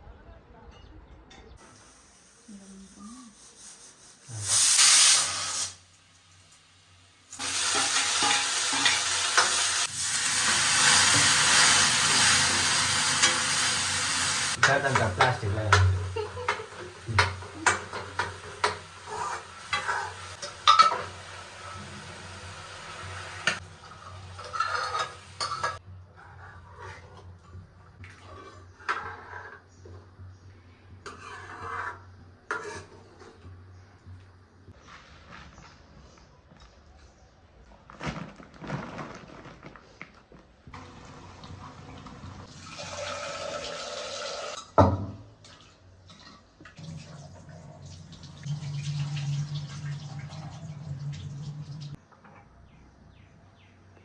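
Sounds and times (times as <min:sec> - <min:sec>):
food sizzling in a pan: 0:01.6 - 0:25.8.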